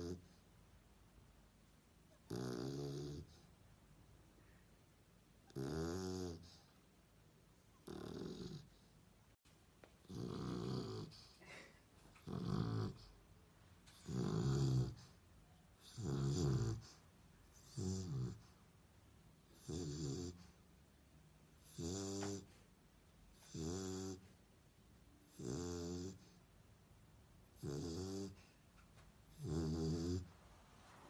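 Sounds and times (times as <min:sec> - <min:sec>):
dog snoring: 0:00.0 - 0:00.4, 0:02.2 - 0:03.5, 0:05.4 - 0:06.8, 0:07.8 - 0:08.9, 0:10.0 - 0:11.3, 0:12.2 - 0:13.2, 0:13.9 - 0:15.2, 0:15.8 - 0:18.6, 0:19.4 - 0:20.6, 0:21.6 - 0:22.6, 0:23.3 - 0:24.4, 0:25.3 - 0:26.4, 0:27.5 - 0:28.6, 0:29.3 - 0:30.4.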